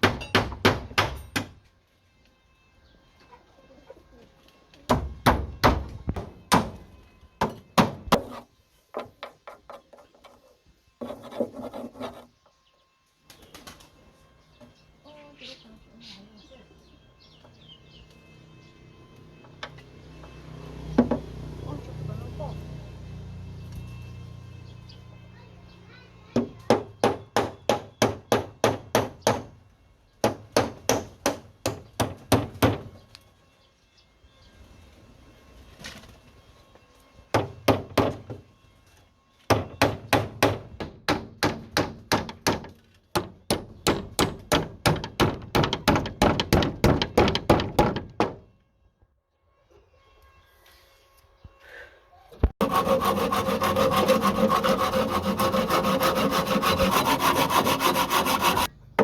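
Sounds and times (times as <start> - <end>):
loud strikes on wood: 0.0 - 1.6, 4.9 - 6.8, 7.4 - 8.4, 26.4 - 29.5, 39.5 - 48.4
rough scraping rub: 9.8 - 12.4, 52.6 - 58.7.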